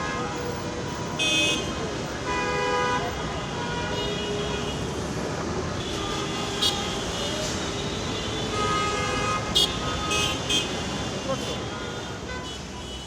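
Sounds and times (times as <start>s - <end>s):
road traffic rumble: 0.0s - 13.0s
vehicle horn: 5.8s - 13.0s.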